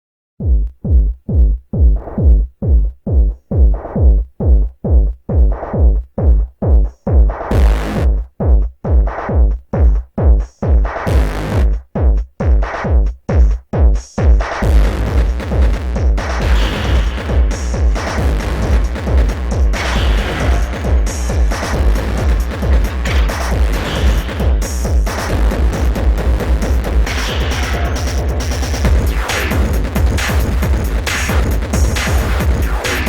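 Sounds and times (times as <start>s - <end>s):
drum machine kick: 0.4s - 33.0s
electronic synth music: 16.2s - 33.0s.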